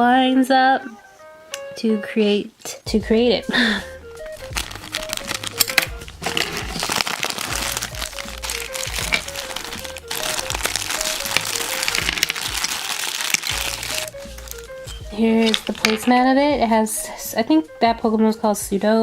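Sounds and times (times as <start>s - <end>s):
background music simple melody: 0.0s - 19.0s
packaging crinkling: 4.2s - 16.3s.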